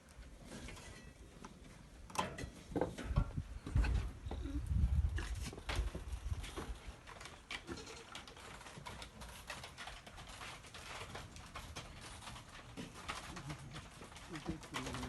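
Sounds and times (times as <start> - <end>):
goat hooves tapping on plastic floor: 4.9 - 15.0.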